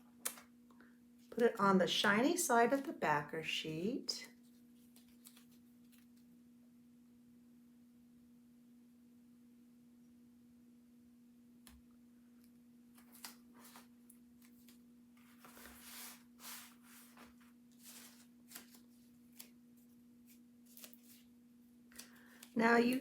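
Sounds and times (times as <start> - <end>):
plastic sheet rustling: 13.0 - 21.3.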